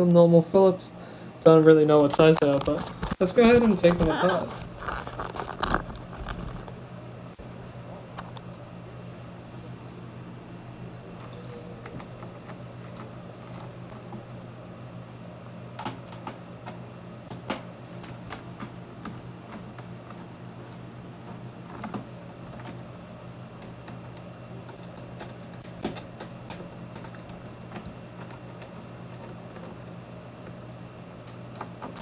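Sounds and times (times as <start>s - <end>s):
steady low hum: 0.0s - 32.0s
plastic case handled: 2.2s - 6.8s.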